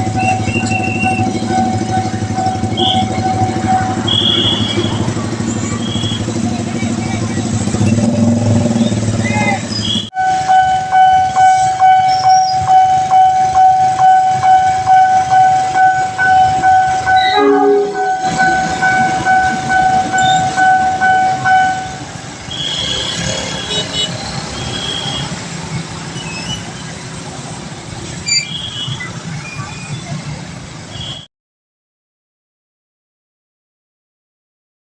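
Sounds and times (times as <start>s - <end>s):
level crossing alarm pulsing: 0.0s - 23.1s
train running: 0.0s - 31.1s.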